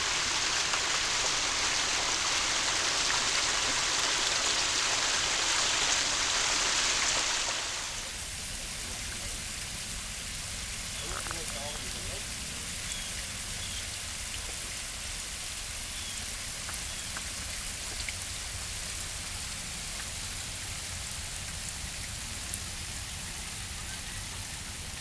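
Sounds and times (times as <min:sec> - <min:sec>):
falling water splashing: 0:00.0 - 0:25.0
faint water drips: 0:07.4 - 0:25.0.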